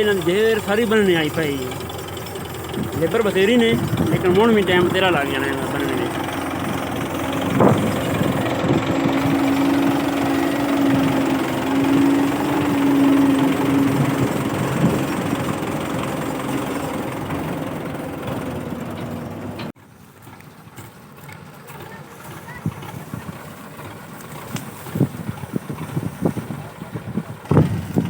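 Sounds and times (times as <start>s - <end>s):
thresher mechanical clatter: 0.0s - 19.7s
engine drone: 0.0s - 26.8s.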